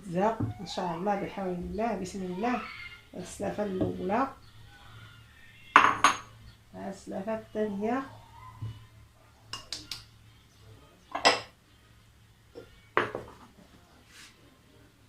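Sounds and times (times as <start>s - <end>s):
kitchenware clinking: 5.7s - 6.4s, 11.1s - 11.6s, 12.6s - 13.5s
kitchenware knocking: 5.8s - 6.3s, 11.2s - 11.5s, 13.0s - 13.4s.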